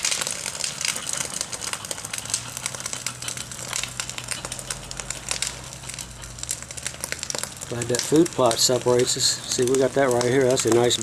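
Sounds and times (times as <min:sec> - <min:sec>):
grass fire crackling and popping: 0:00.0 - 0:11.0.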